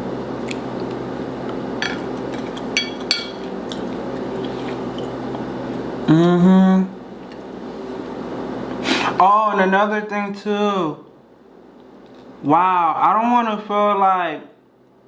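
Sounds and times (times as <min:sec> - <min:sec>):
steady low hum: 0:00.0 - 0:15.0
wet chewing and mouth sounds: 0:00.4 - 0:05.9.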